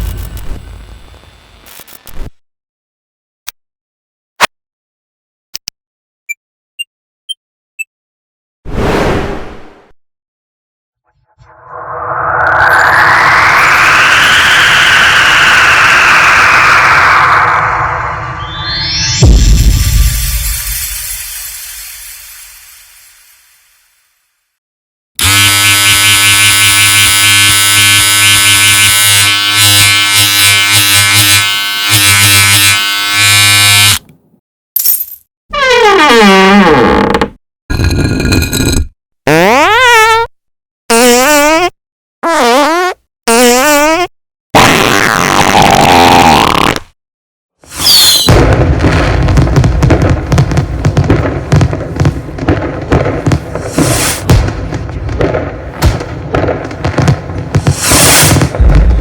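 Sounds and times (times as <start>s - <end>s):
fart sound effect: 11.2s - 22.4s, 35.6s - 40.3s, 40.9s - 47.0s, 53.2s - 54.5s, 55.8s - 59.0s
falling whistle: 11.4s - 21.9s, 47.8s - 48.3s
fireworks bangs and crackles: 12.7s - 23.8s, 48.3s - 59.0s
electric razor buzzing: 25.2s - 34.0s.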